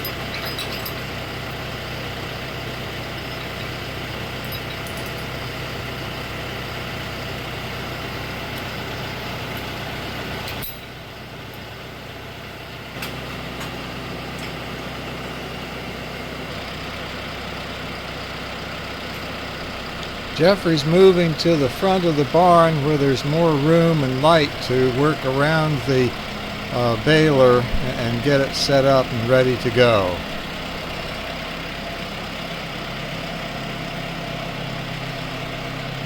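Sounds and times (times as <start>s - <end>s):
tractor diesel engine running: 0.0s - 36.0s.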